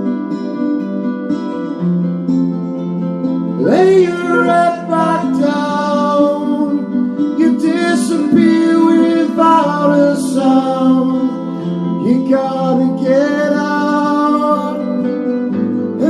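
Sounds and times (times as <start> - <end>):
guitar-backed song: 0.0 - 16.0
person singing held line: 3.6 - 6.7.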